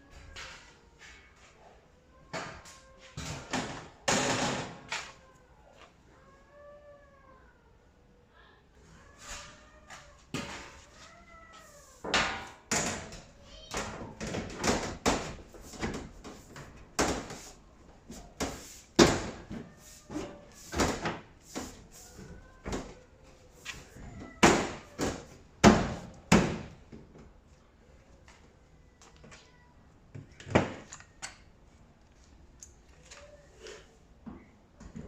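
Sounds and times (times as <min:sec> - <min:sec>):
knocks and bangs of metal panels: 0:03.2 - 0:04.9, 0:12.1 - 0:17.4.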